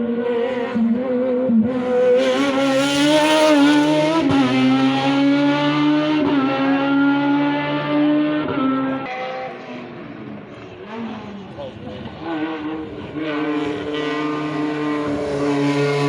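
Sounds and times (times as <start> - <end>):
rally car engine accelerating: 0.0 - 16.0.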